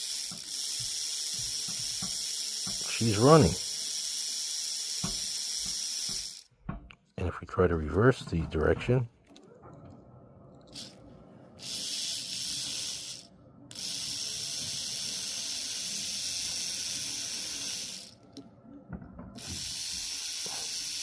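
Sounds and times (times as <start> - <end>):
small electric motor running: 0.0 - 6.5, 10.7 - 11.0, 11.6 - 18.2, 19.4 - 21.0.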